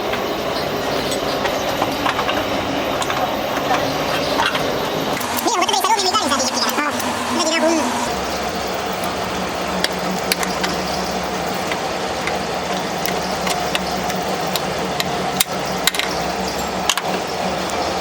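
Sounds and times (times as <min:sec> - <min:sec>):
steady mechanical hum: 0:00.0 - 0:18.0.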